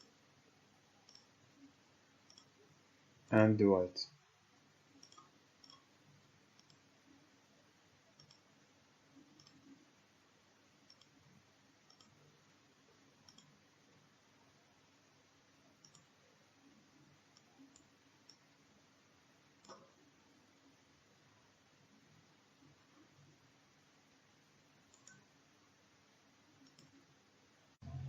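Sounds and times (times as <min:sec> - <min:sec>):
low room hiss: 0:00.0 - 0:28.0
computer mouse clicks: 0:01.0 - 0:01.4, 0:02.2 - 0:02.6, 0:04.9 - 0:05.9, 0:06.5 - 0:06.9, 0:08.1 - 0:08.5, 0:09.2 - 0:09.8, 0:10.8 - 0:11.2, 0:11.8 - 0:12.3, 0:13.2 - 0:13.6, 0:15.8 - 0:16.1, 0:17.3 - 0:18.5, 0:19.6 - 0:20.0, 0:24.9 - 0:25.3, 0:26.6 - 0:27.0.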